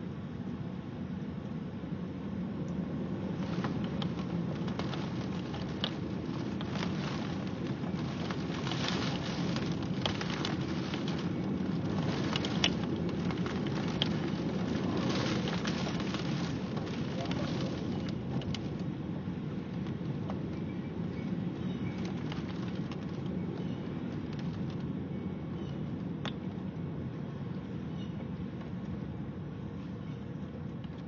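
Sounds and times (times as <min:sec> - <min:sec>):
rain falling: 0:02.5 - 0:25.1
raindrops tapping a surface: 0:02.6 - 0:25.0, 0:25.8 - 0:26.8.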